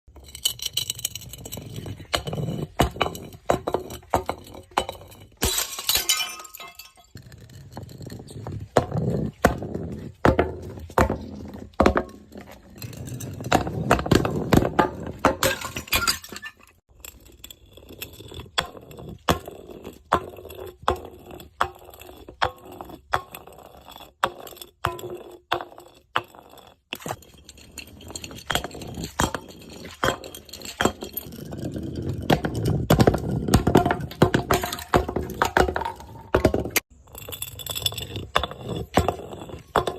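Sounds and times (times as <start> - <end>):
glass bottles breaking: 4.8 - 7.2, 15.3 - 16.8
glass shards clinking: 5.4 - 7.1, 15.5 - 16.8.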